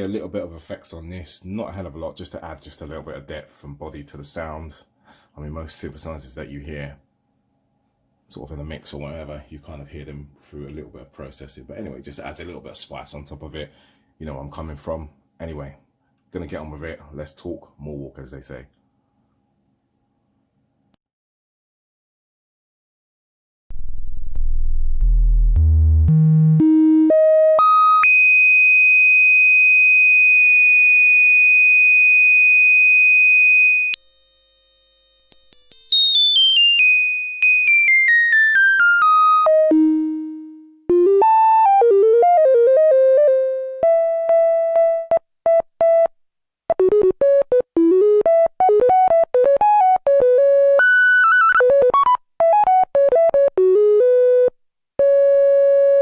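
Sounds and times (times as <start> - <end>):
analogue synthesizer notes: 23.7 - 34.4, 35.5 - 46.1, 46.7 - 56.0.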